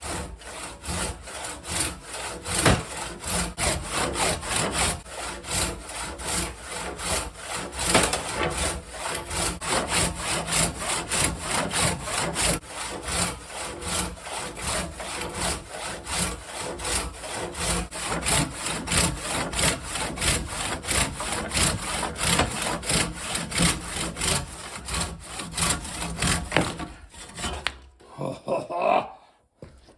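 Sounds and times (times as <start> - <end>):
handsaw cutting through wood: 0.0 - 27.8.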